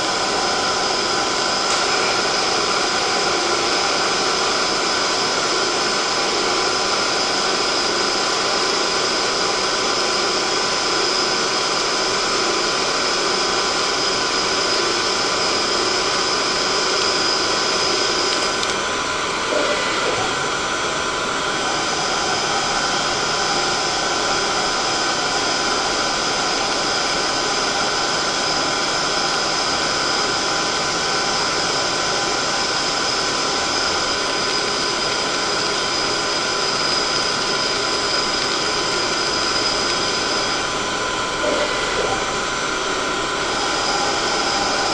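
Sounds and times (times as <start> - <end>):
cnc machine whining hiss: 0.0 - 44.9.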